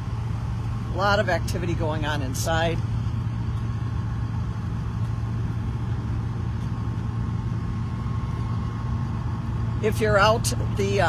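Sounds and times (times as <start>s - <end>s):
engines idling low hum: 0.0s - 11.0s.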